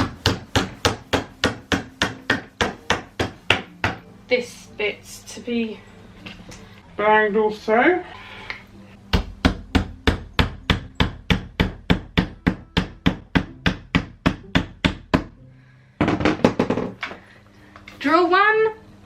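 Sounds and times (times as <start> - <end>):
hammer striking wood: 0.0 - 4.0.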